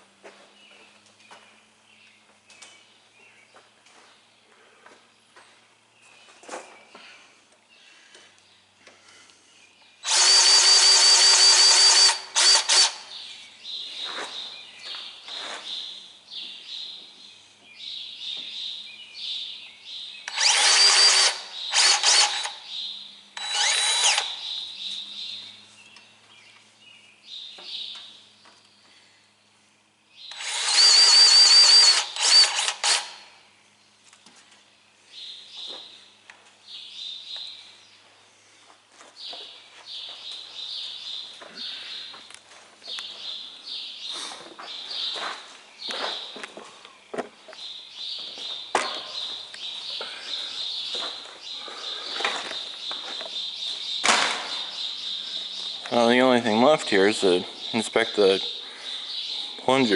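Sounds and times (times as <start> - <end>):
grease gun motor whining: 10.0 - 13.0, 20.3 - 22.6, 23.4 - 24.4, 30.3 - 33.3.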